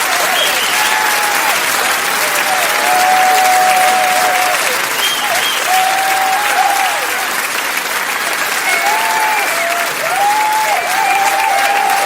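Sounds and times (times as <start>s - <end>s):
crowd applauding: 0.0s - 12.0s
voices cheering: 0.0s - 12.0s.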